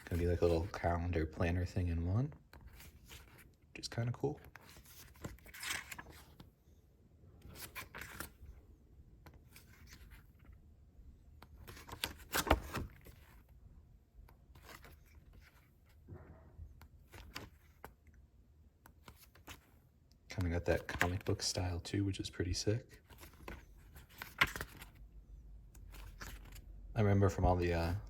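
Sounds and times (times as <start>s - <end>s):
paper pages rustling and turning: 0.0s - 0.9s, 2.5s - 3.6s, 4.4s - 6.6s, 7.4s - 8.6s, 9.2s - 10.6s, 11.4s - 13.6s, 14.2s - 18.2s, 18.8s - 21.6s, 22.9s - 25.0s, 25.7s - 28.0s.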